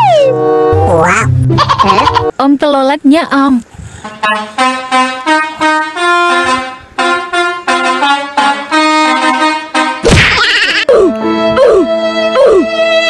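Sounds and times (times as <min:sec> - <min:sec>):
multi-tone bus horn melody: 0:00.0 - 0:01.0, 0:04.0 - 0:10.1, 0:11.0 - 0:13.0.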